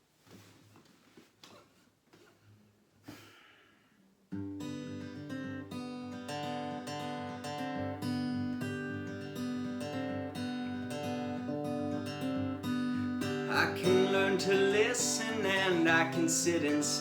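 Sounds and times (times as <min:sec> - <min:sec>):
acoustic guitar strumming: 0:04.3 - 0:17.0.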